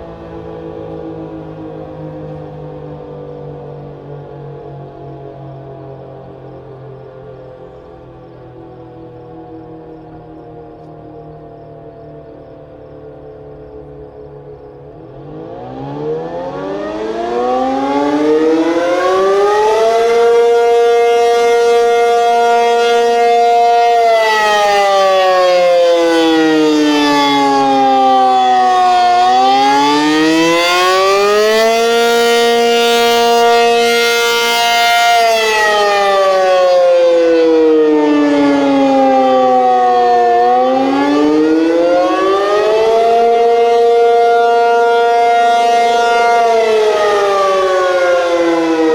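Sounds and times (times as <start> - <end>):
storm warning siren wailing: 0.0 - 48.9.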